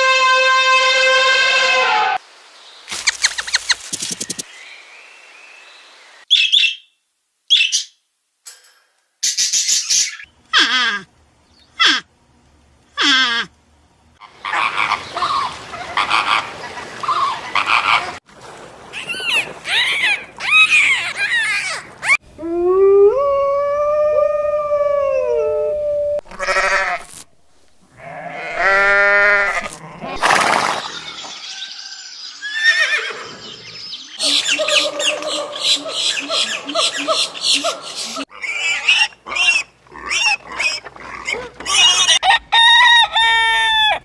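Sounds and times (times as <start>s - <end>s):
farm animal calls: 32.6s - 44.0s.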